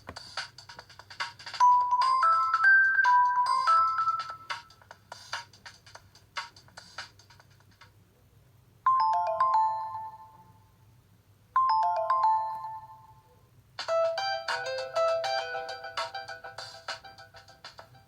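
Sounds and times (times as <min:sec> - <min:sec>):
melodic ringtone: 0:01.6 - 0:04.9, 0:08.9 - 0:10.6, 0:11.6 - 0:18.0.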